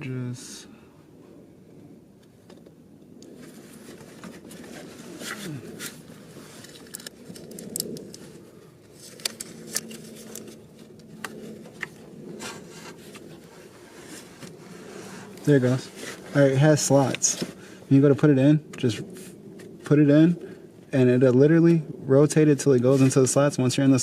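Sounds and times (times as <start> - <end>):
plastic rubbing and scraping: 3.3 - 17.6.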